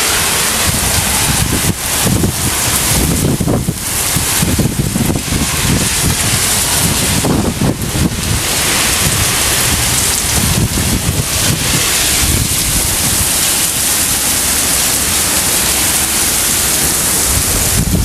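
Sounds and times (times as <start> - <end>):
heavy rain pouring: 0.0 - 18.0
wind buffeting microphone: 0.0 - 18.0.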